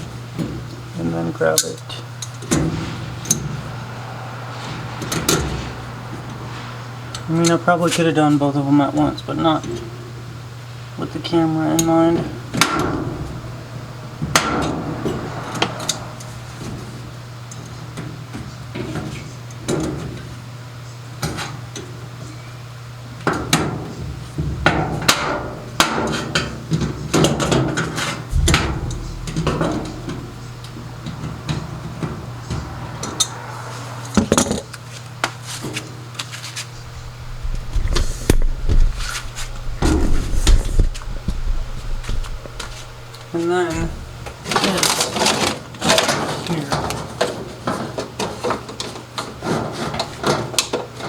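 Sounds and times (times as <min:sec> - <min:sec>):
steady low hum: 0:00.0 - 0:19.2, 0:24.0 - 0:45.0.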